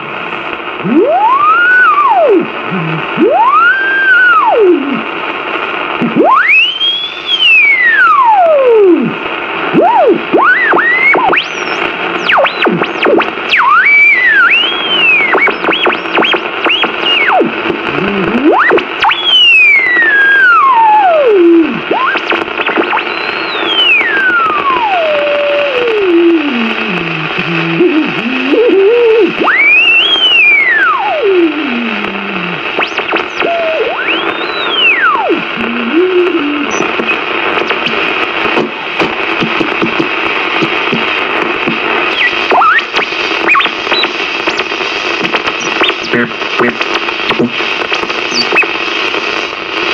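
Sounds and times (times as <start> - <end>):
steady hiss: 8.6 - 19.4, 20.8 - 49.9
whistled pitch glides: 22.8 - 25.2, 32.9 - 35.4.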